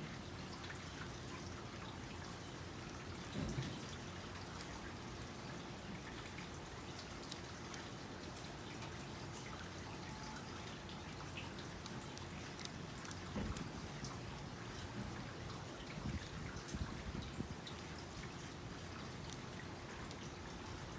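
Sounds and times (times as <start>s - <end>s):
weaving material clicks and crackles: 6.4s - 8.6s, 10.0s - 15.3s, 15.9s - 20.9s
soft thump: 13.3s - 13.8s.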